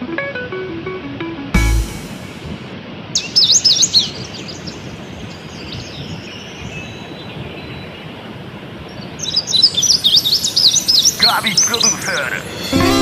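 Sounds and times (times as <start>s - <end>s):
steady background hiss: 1.6s - 6.6s, 9.5s - 13.0s
bird chirping: 9.2s - 13.0s.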